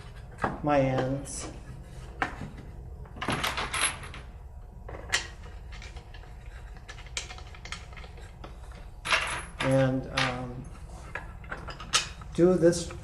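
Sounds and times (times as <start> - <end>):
workbench parts knocking and clicking: 11.1 - 12.3.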